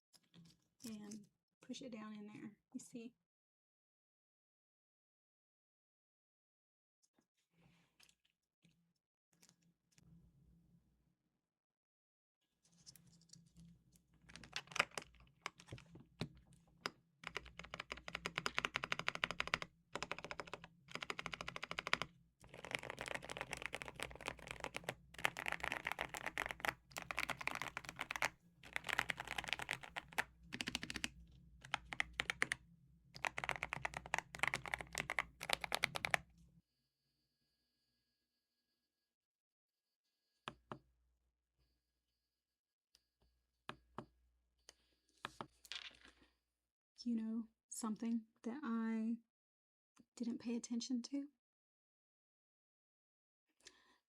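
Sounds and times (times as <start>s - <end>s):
mechanical keyboard typing: 14.3s - 15.8s, 17.2s - 32.6s, 33.2s - 36.2s.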